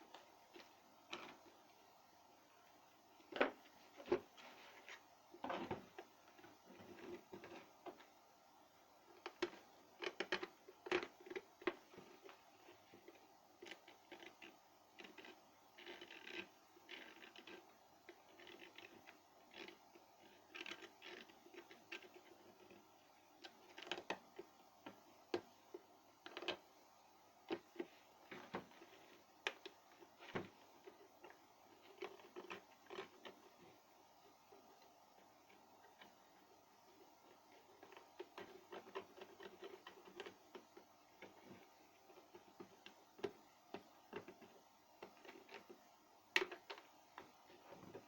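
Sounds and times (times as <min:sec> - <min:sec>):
small parts and tools clicking: 0:09.1 - 0:22.8.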